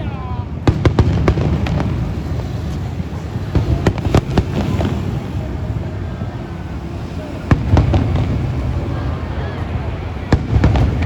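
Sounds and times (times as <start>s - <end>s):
firework bangs and crackles: 0.0s - 11.0s
loud firework bang: 0.5s - 6.6s, 7.4s - 9.3s, 10.2s - 11.0s.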